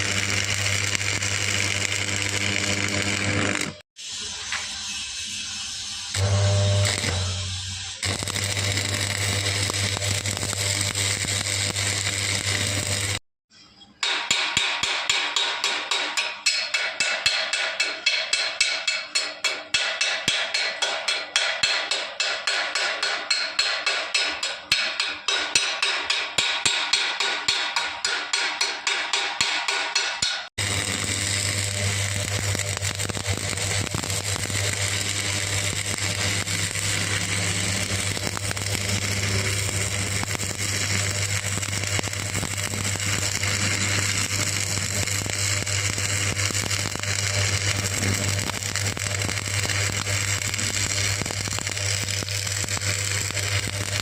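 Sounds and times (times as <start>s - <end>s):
welding buzz with hiss: 0.0s - 13.2s, 30.6s - 54.0s.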